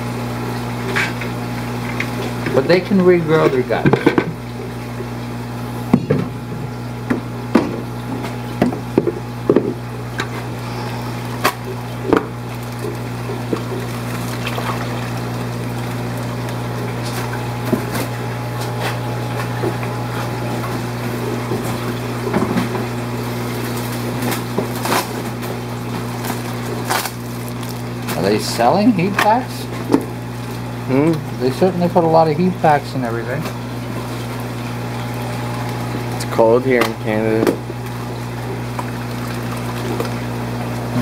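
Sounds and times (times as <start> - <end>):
aquarium pumps humming: 0.0 - 41.0
moving water: 0.0 - 41.0.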